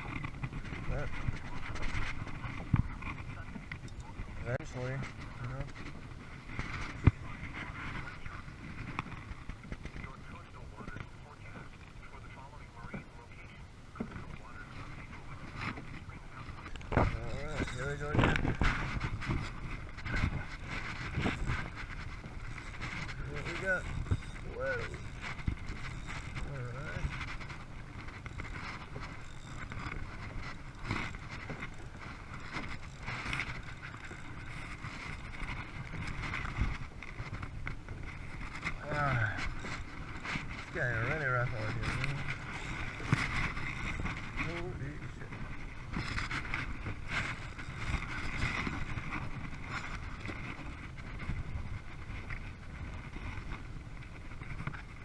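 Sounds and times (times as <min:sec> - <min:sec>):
wind on microphone: 0:00.0 - 0:55.0.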